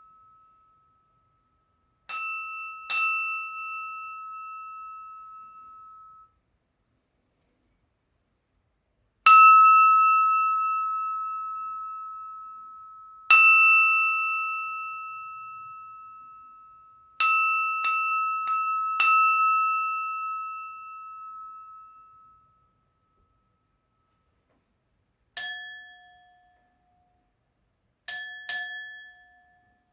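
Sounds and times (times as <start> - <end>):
crystal glass ringing when struck: 2.1 - 6.3, 25.4 - 26.6, 28.1 - 29.7.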